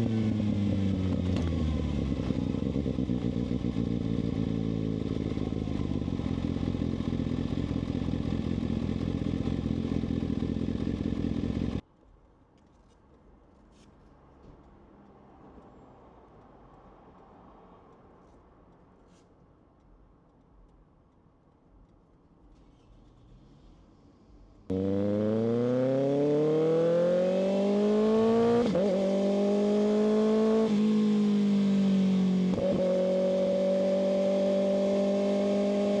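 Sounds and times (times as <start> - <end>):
motorcycle engine running: 0.0 - 11.8, 24.7 - 36.0.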